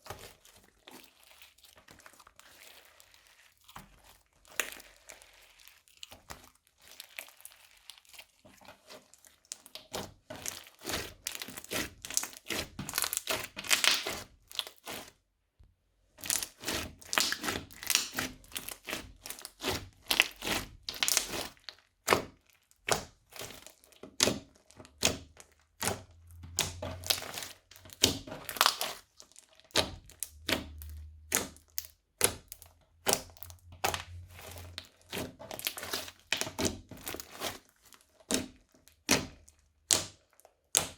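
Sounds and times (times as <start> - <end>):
crunchy slime crackling and popping: 0.0 - 15.2, 16.2 - 40.9.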